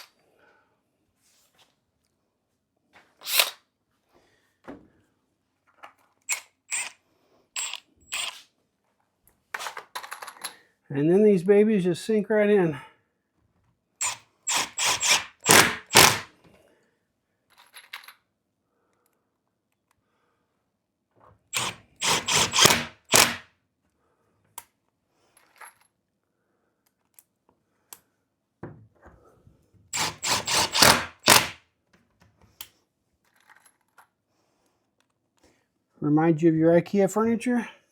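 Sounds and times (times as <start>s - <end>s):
power drill driving screws: 6.3s - 7.0s, 7.6s - 8.4s, 14.0s - 16.3s, 21.6s - 23.4s, 30.0s - 31.6s.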